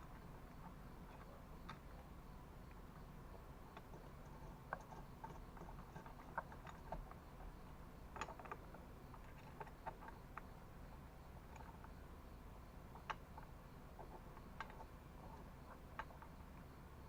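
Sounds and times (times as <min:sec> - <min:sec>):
low steady hum: 0:00.0 - 0:17.0
small metal parts and tools clicking: 0:03.7 - 0:16.7.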